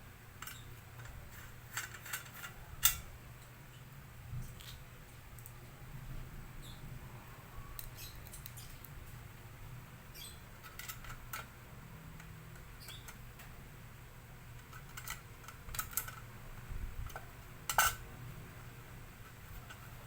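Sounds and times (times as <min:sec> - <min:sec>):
faint steady hum: 0:00.0 - 0:20.0
small hard parts clicking: 0:00.4 - 0:03.0, 0:10.6 - 0:13.5, 0:14.5 - 0:18.0.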